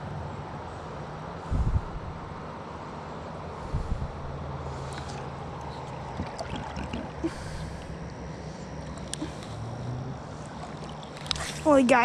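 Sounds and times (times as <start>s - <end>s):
low steady hum: 0.0s - 12.0s
river water running: 3.4s - 12.0s.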